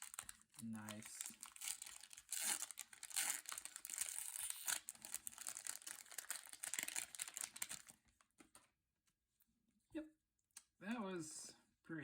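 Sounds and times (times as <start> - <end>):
foil wrapper crinkling and tearing: 0.0 - 8.2.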